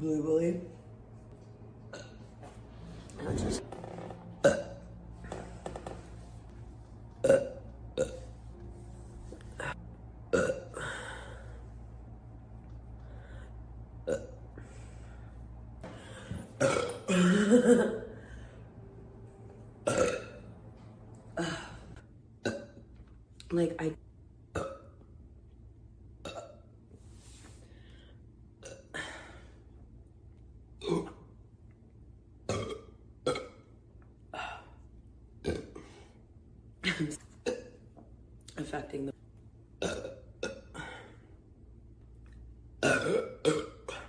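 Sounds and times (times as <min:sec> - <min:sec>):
woman burping: 0:01.9 - 0:02.2, 0:03.2 - 0:05.4, 0:07.2 - 0:08.2, 0:09.6 - 0:11.4, 0:14.0 - 0:14.4, 0:15.9 - 0:18.5, 0:19.8 - 0:20.4, 0:21.4 - 0:22.7, 0:42.8 - 0:44.0.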